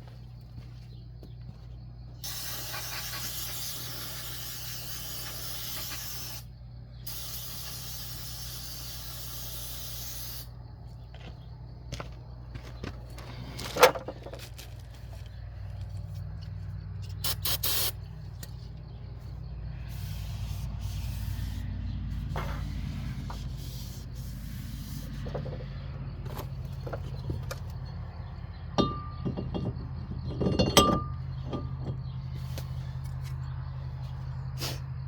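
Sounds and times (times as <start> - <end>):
steady low hum: 0.0 - 35.0
metal tools clicking and knocking: 28.7 - 32.1
metal clanks with ring: 28.7 - 32.2.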